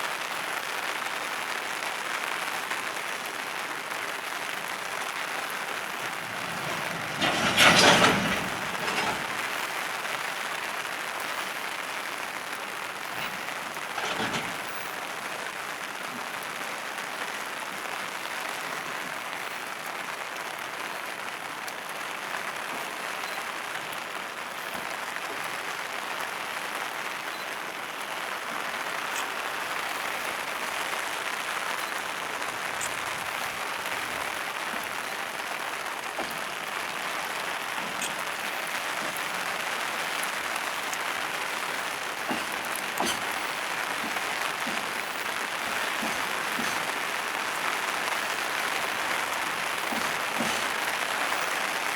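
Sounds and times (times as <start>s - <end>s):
freight wagons rolling hiss: 4.6s - 16.2s, 29.2s - 51.9s
wagon clicks: 5.5s - 9.8s, 13.1s - 15.0s, 36.0s - 51.9s.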